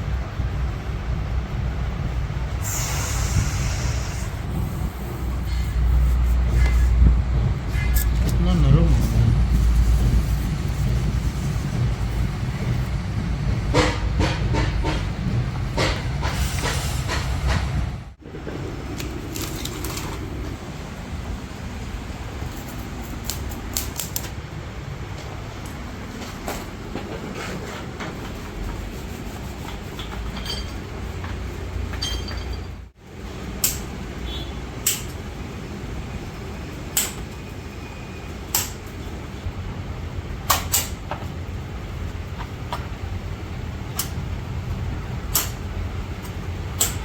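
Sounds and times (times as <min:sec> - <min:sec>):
steady low rumble: 0:00.0 - 0:27.1
sharp clicks and knocks: 0:13.5 - 0:17.7, 0:45.3 - 0:45.6.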